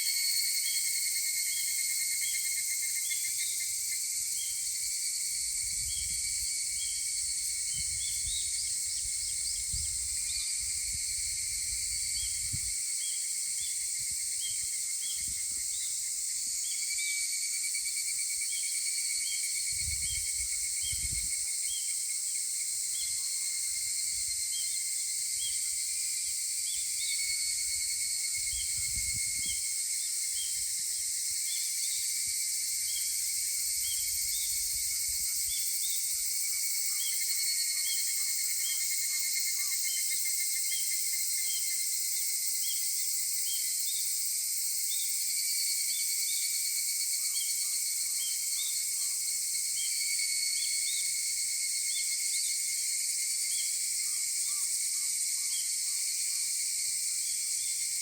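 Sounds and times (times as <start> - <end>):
cicadas calling: 0.0 - 58.0.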